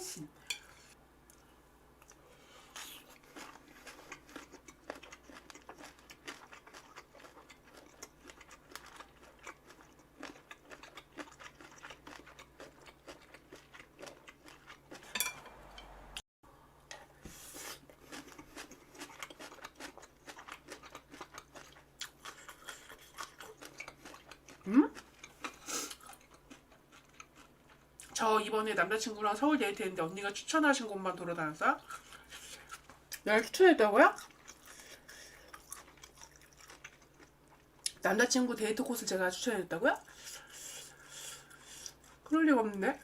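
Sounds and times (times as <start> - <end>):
chewing and crunching food: 0.5 - 15.2, 16.9 - 28.2, 31.8 - 38.0, 40.0 - 43.0
tableware clacking: 15.1 - 16.0.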